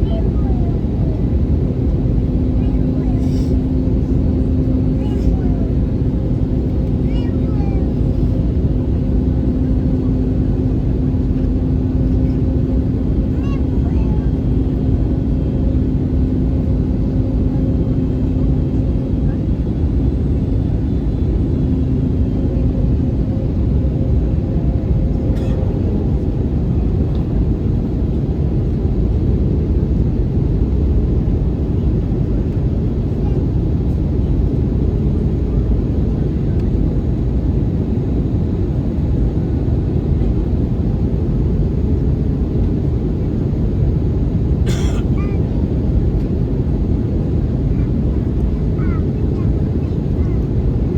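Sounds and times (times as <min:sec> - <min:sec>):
faint hum: 0:00.0 - 0:29.5
airplane cabin engine rumble: 0:00.0 - 0:50.9.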